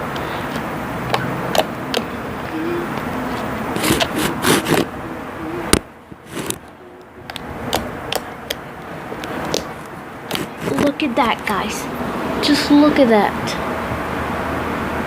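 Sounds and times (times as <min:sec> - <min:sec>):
steady background hiss: 0:00.0 - 0:15.0
sticky clicks and pops: 0:09.2 - 0:10.9.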